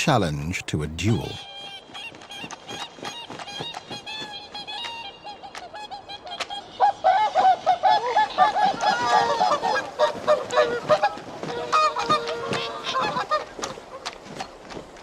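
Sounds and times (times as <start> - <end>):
swans trumpeting honks: 6.2 - 13.7.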